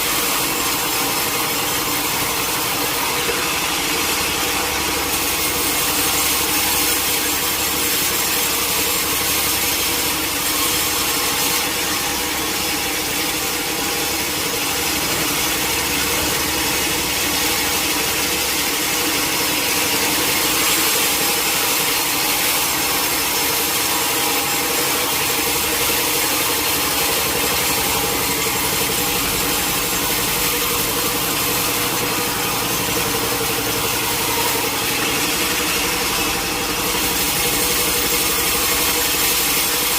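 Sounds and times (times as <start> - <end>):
machine humming: 0.0 - 39.9
saw cutting wood: 0.0 - 39.9.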